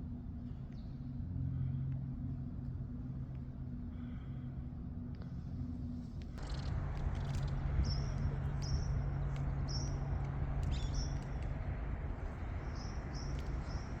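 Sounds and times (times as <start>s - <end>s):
low hum: 0.0s - 14.0s
small bird chirping: 6.4s - 11.4s, 12.4s - 14.0s.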